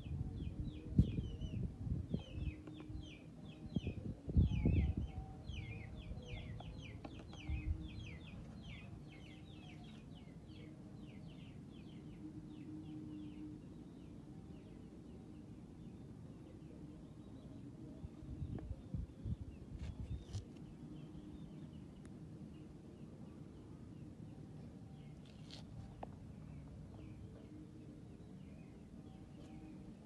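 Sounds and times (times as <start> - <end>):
birds chirping: 0.0 - 14.8.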